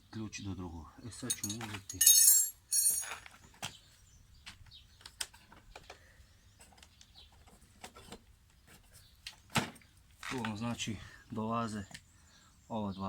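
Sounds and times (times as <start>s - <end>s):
metal hand tools clinking: 1.3s - 3.2s.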